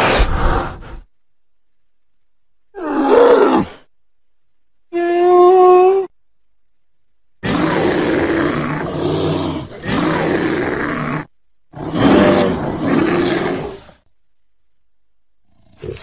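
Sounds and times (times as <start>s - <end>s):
bear growling: 7.4s - 14.0s, 15.4s - 16.0s.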